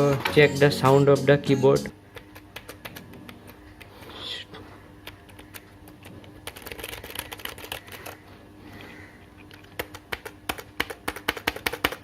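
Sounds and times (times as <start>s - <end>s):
keyboard key clicks: 9.5s - 12.0s.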